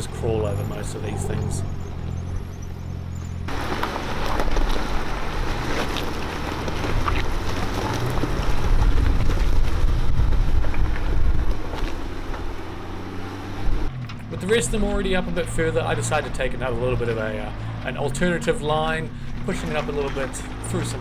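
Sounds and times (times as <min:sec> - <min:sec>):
wind buffeting microphone: 0:00.0 - 0:14.1
vehicle engine under load: 0:00.0 - 0:21.0.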